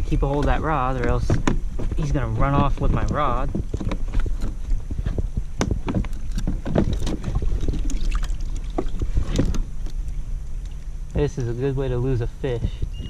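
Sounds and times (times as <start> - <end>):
wind on microphone: 0.0 - 10.3, 11.2 - 13.0
gear knocking on plastic kayak: 0.2 - 9.9.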